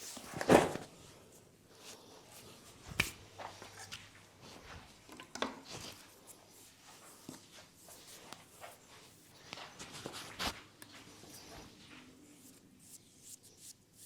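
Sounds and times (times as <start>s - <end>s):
hands rubbing hair and skin: 1.8s - 14.0s.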